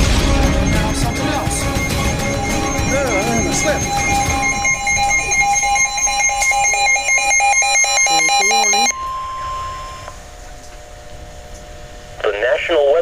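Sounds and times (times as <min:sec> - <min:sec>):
fast electronic beeps: 0:00.0 - 0:10.1
high alarm tone: 0:00.0 - 0:10.5.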